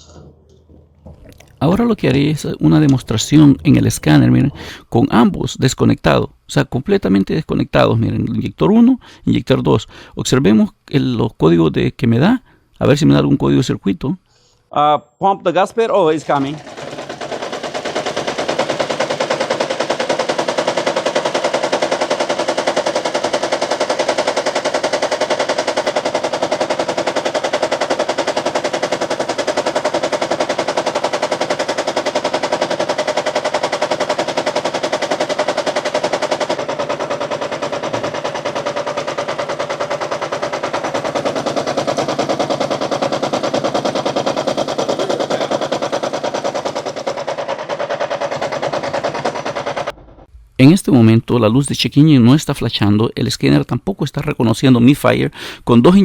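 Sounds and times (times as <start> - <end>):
engine rattling with rapid knocks: 16.2 - 50.3.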